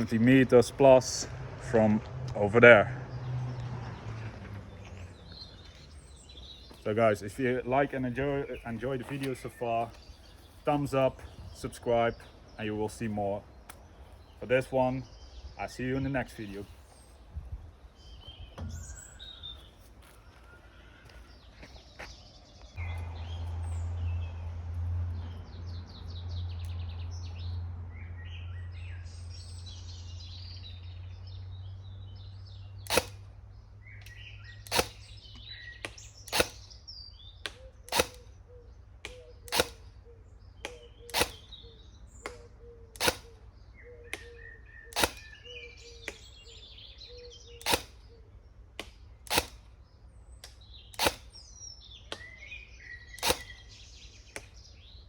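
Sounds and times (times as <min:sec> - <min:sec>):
birds singing: 0:00.0 - 0:55.0
low rumble: 0:22.7 - 0:29.4
airsoft rifle shots: 0:32.9 - 0:33.2, 0:34.7 - 0:35.2, 0:35.9 - 0:36.7, 0:37.9 - 0:38.3, 0:39.5 - 0:39.9, 0:40.8 - 0:41.5, 0:43.0 - 0:43.4, 0:44.9 - 0:45.4, 0:47.6 - 0:48.1, 0:49.2 - 0:49.7, 0:50.9 - 0:51.4, 0:53.2 - 0:53.7.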